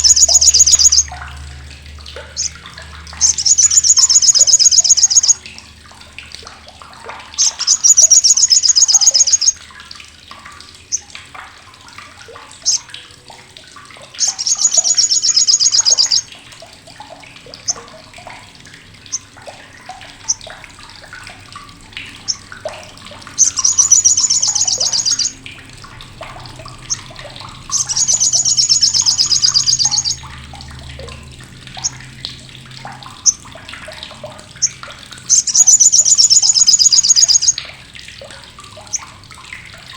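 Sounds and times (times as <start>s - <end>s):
bird chattering: 0.0s - 1.1s, 2.4s - 2.6s, 3.2s - 5.4s, 7.4s - 9.6s, 12.6s - 12.8s, 14.2s - 16.3s, 23.4s - 25.4s, 27.7s - 30.2s, 34.6s - 37.6s.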